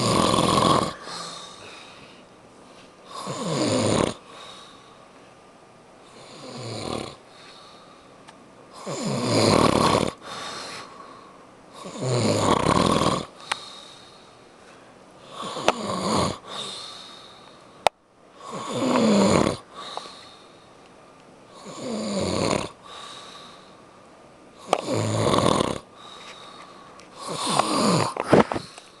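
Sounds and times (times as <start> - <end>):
person snoring: 0.0 - 1.9, 3.1 - 4.7, 6.1 - 7.2, 8.8 - 10.9, 11.7 - 13.3, 15.2 - 17.0, 18.4 - 20.2, 21.6 - 23.2, 24.6 - 26.0, 27.2 - 28.8.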